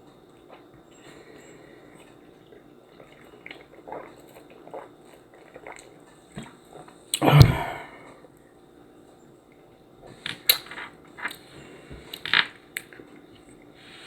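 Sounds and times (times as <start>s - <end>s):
soft chewing with clicks: 0.0s - 7.2s.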